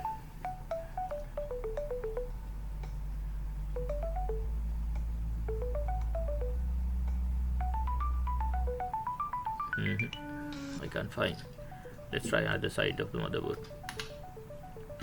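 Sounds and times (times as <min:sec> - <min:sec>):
bell-like mallet notes: 0:03.8 - 0:04.4.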